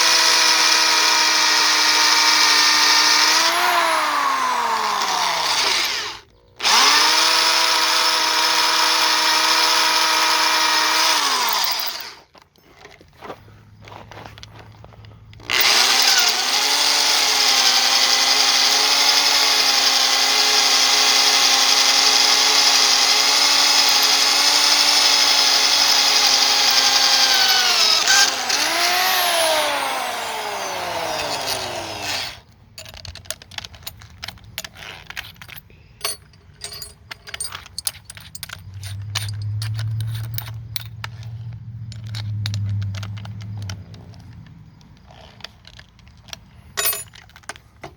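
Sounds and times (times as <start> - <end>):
power tool motor whining: 0.0 - 12.2, 15.4 - 32.9
metal parts clicking and rattling: 11.2 - 13.0, 31.0 - 47.9.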